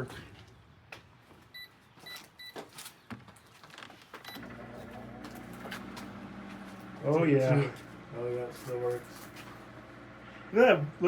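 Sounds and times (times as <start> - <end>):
microwave control panel beeping: 4.3 - 4.8
microwave running hum: 4.3 - 8.3, 9.0 - 11.0.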